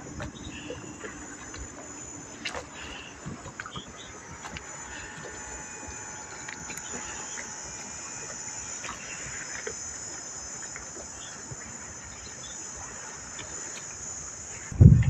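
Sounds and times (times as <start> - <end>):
insects chirping chorus: 0.0 - 15.0
faint ticks: 2.4 - 14.3.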